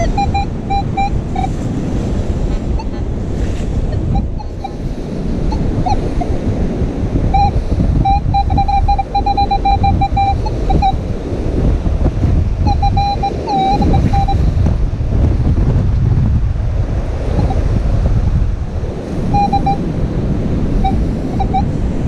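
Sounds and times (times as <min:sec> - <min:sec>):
metal detector beeps: 0:00.0 - 0:01.6, 0:03.9 - 0:04.8, 0:05.5 - 0:06.4, 0:07.3 - 0:11.0, 0:12.7 - 0:14.5, 0:19.3 - 0:19.8, 0:20.8 - 0:21.8
surf: 0:00.0 - 0:22.0
wind buffeting microphone: 0:00.0 - 0:22.0.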